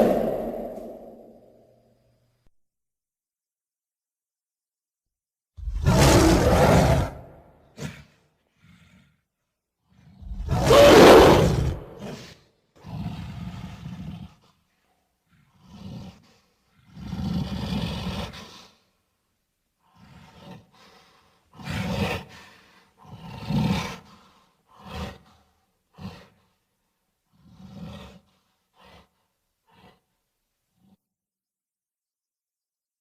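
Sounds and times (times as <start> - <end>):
creature roaring: 0.0 - 1.4, 5.6 - 7.3, 10.2 - 12.3.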